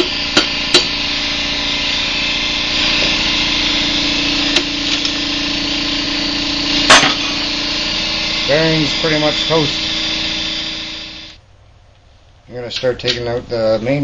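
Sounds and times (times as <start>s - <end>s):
steady mechanical hum: 0.0s - 14.0s.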